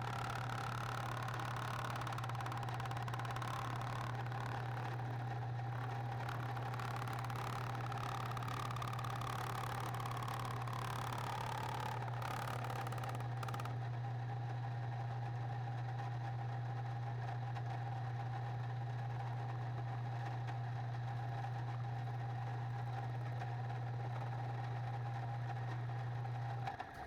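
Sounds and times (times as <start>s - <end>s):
machine humming with a whine: 0.0s - 13.7s.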